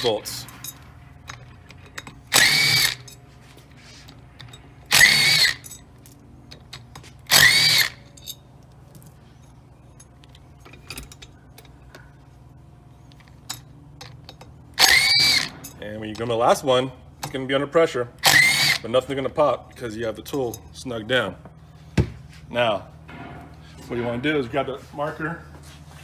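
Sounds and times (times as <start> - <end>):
cordless power driver spinning: 1.7 - 3.1, 4.1 - 5.6, 7.2 - 8.1, 14.8 - 15.5, 18.2 - 18.9.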